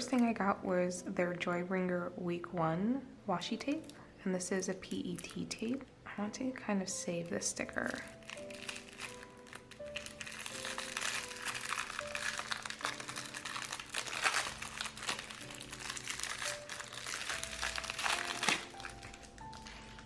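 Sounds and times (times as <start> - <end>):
soft piano music: 0.0 - 20.0
packaging crinkling and rustling: 7.6 - 20.0.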